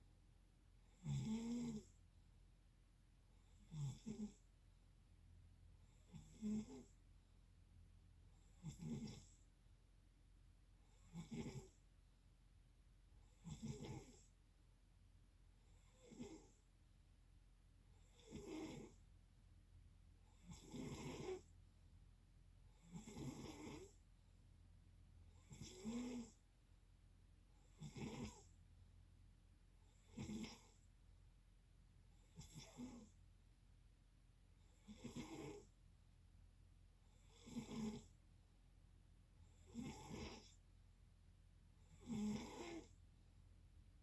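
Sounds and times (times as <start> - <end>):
person snoring: 20.5 - 21.4, 22.9 - 24.0, 42.0 - 42.9.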